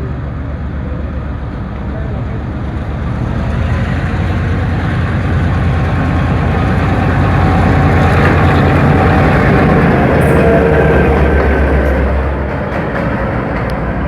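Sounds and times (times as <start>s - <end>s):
diesel locomotive engine throbbing: 0.0s - 14.0s.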